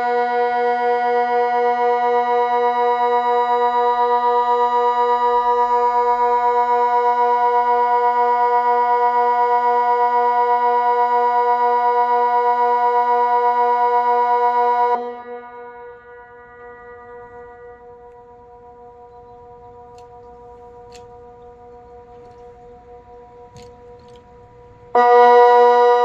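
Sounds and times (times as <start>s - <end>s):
low steady siren tone: 0.0s - 26.0s.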